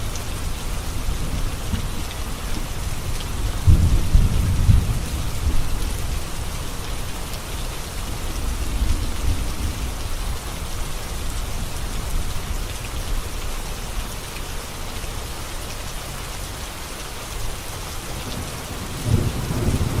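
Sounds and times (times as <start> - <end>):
heavy rain on a road: 0.0 - 20.0.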